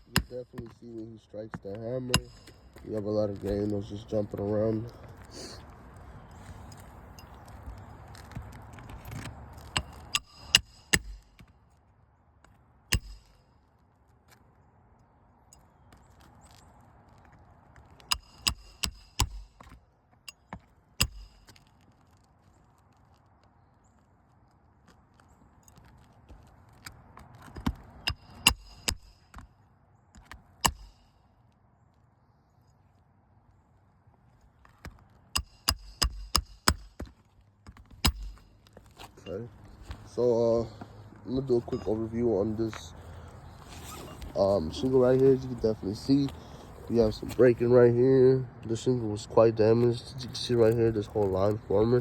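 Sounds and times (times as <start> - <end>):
hammer striking nails into shingles: 0.0 - 3.6, 9.1 - 11.5, 12.9 - 13.4, 18.0 - 21.7, 27.6 - 29.4, 30.2 - 31.1, 35.3 - 38.6.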